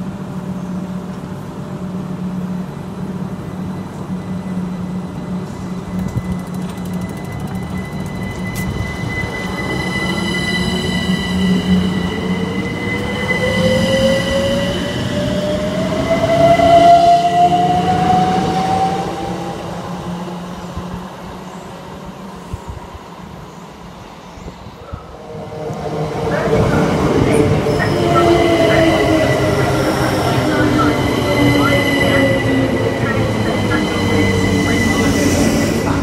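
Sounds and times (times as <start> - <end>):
electric train motors whining: 5.7 - 16.8.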